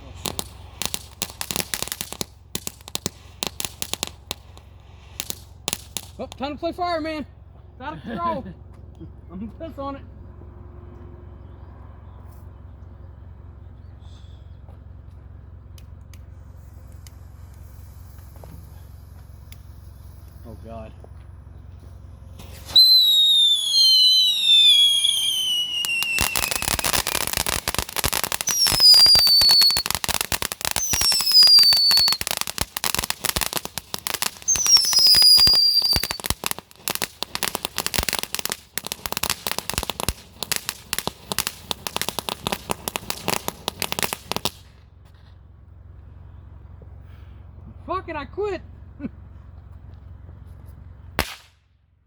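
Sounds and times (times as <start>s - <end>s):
rapid firecracker crackling: 0.0s - 7.2s, 15.8s - 20.6s, 21.3s - 45.3s, 50.6s - 51.7s
firework falling whistles: 16.4s - 20.6s, 21.7s - 44.8s, 51.2s - 51.6s.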